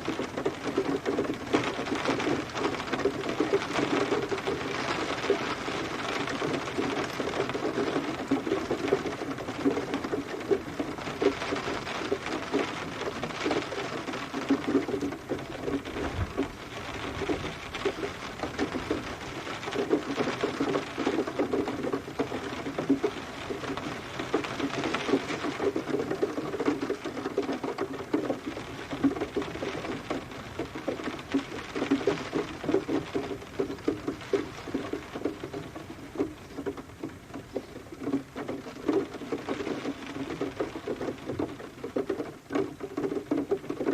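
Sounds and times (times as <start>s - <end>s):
rain pattering on hard surface: 0.0s - 43.9s.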